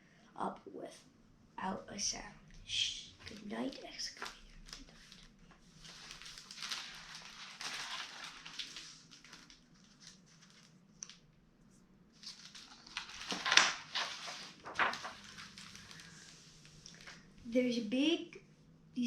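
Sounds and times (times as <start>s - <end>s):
book pages turning: 3.2s - 11.3s, 12.2s - 17.3s
paper rustling and crinkling: 3.2s - 17.4s.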